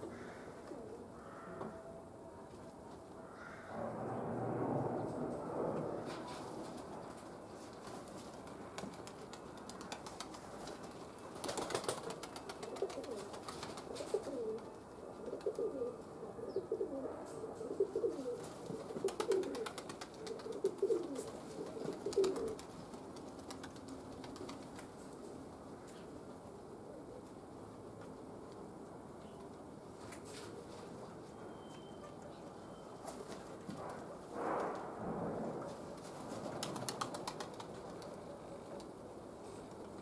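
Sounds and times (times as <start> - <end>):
pigeons cooing: 0.0 - 1.8, 11.6 - 22.7.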